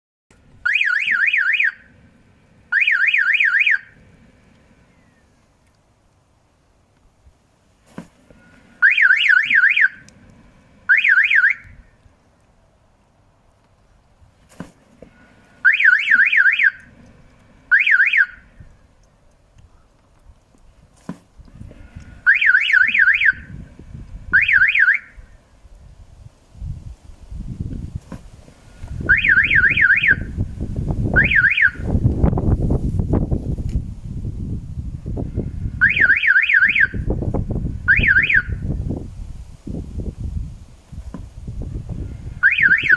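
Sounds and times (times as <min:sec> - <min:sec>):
electronic warbling alarm: 0:08.8 - 0:10.0, 0:22.2 - 0:23.6, 0:24.3 - 0:25.1, 0:29.0 - 0:30.4, 0:31.1 - 0:31.9, 0:35.8 - 0:37.1, 0:37.8 - 0:38.6, 0:42.3 - 0:42.9
low rumbling flapping noise: 0:11.6 - 0:42.9.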